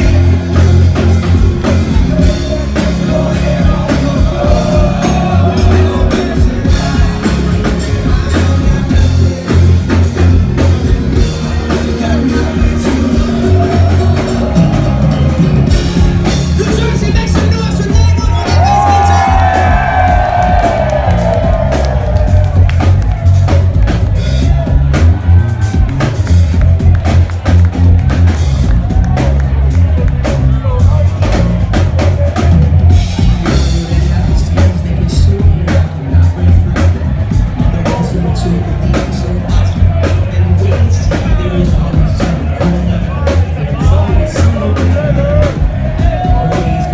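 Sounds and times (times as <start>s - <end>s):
drum kit: 0.0s - 46.9s
heavy repeating bass line: 0.0s - 46.9s
live rock band playing: 0.0s - 46.9s.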